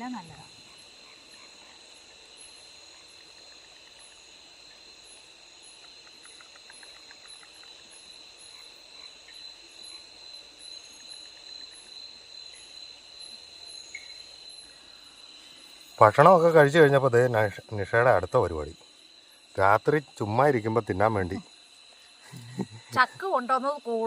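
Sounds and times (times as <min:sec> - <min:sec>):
crickets trilling: 0:00.0 - 0:24.0.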